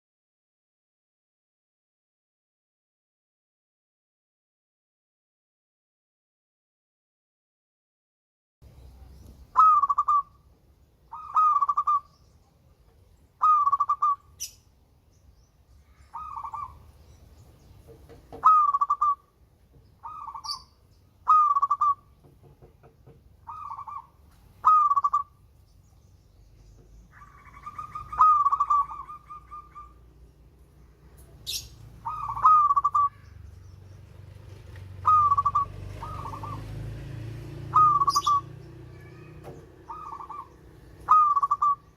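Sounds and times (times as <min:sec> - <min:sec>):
dove cooing: 0:09.5 - 0:10.4, 0:11.1 - 0:12.1, 0:13.4 - 0:14.5, 0:16.1 - 0:16.8, 0:18.3 - 0:19.3, 0:20.0 - 0:22.1, 0:23.4 - 0:25.4, 0:27.1 - 0:30.1, 0:31.4 - 0:33.2, 0:35.0 - 0:36.9, 0:37.6 - 0:41.9.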